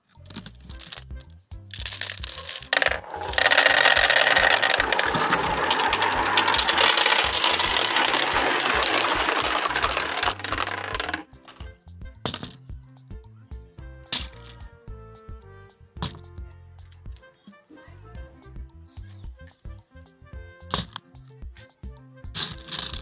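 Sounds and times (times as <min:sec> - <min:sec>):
background music with steady beat: 0:00.0 - 0:02.6, 0:11.2 - 0:23.0
marbles clattering down marble run: 0:00.2 - 0:01.2, 0:01.8 - 0:11.7, 0:12.3 - 0:12.6, 0:14.2 - 0:14.6, 0:22.4 - 0:23.0.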